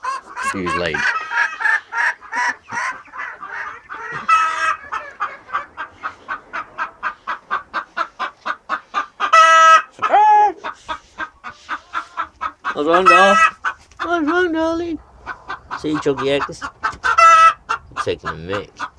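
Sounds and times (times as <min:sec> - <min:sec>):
chicken harsh call: 0:00.0 - 0:18.9
chicken squawks: 0:00.0 - 0:18.9
chickens clucking: 0:00.0 - 0:18.9.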